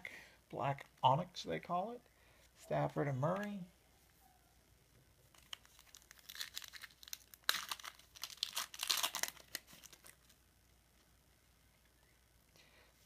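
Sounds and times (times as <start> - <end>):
foil wrapper crinkling and tearing: 5.2 - 10.4.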